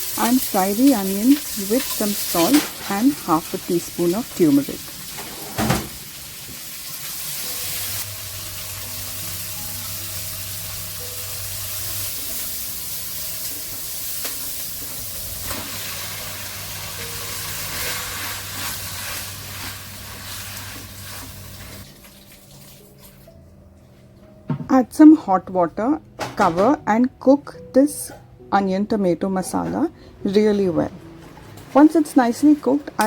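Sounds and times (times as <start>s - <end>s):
onions sizzling in a pan: 0.0s - 5.2s, 5.9s - 22.9s.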